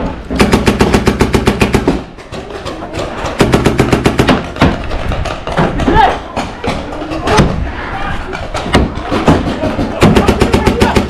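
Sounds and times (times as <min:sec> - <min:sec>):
paintball markers firing: 0:00.3 - 0:05.6.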